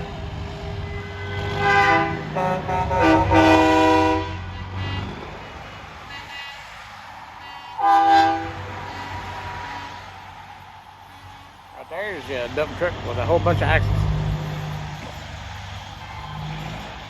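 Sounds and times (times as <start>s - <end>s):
truck air horn blasts: 0.8s - 10.2s
truck engine rumble: 8.4s - 17.0s.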